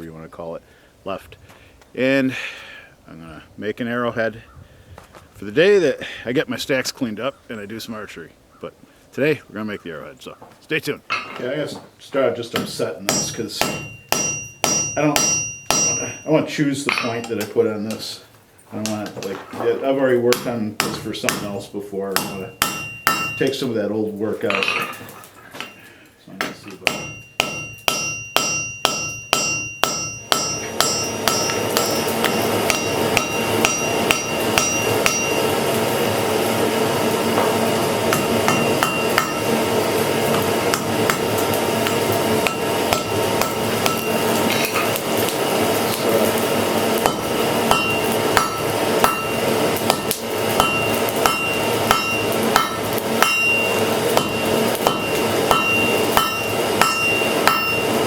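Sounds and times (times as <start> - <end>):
hammer striking iron on anvil: 12.5 - 17.6, 20.3 - 23.7, 26.4 - 35.7, 37.4 - 45.3, 46.0 - 58.0.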